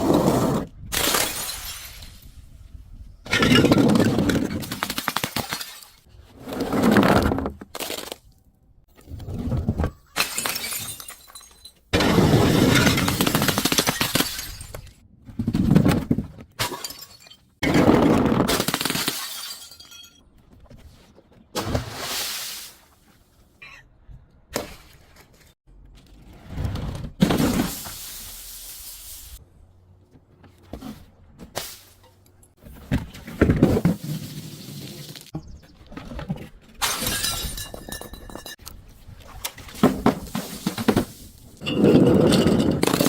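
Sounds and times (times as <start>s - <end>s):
glass bottles crushing and shattering: 10.0s - 14.9s, 16.6s - 20.2s, 36.8s - 38.6s, 39.8s - 43.0s.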